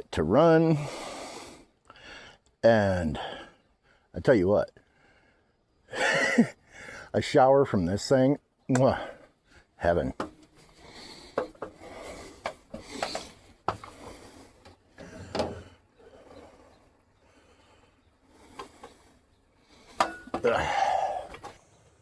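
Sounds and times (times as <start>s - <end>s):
rubbing and scraping: 10.2s - 17.0s.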